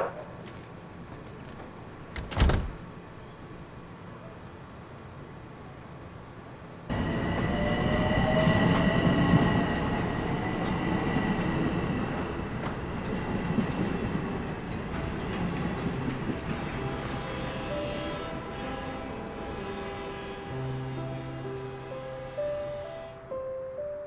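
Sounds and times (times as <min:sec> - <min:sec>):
train rumbling on rails: 0:00.0 - 0:23.3
train wheels squealing: 0:06.9 - 0:12.8.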